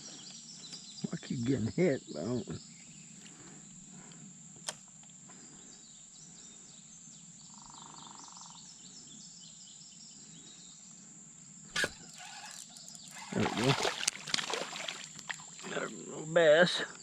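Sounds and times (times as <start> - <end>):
birds chirping: 0.0 - 4.3, 5.2 - 16.4
high-pitched insect drone: 5.3 - 11.0.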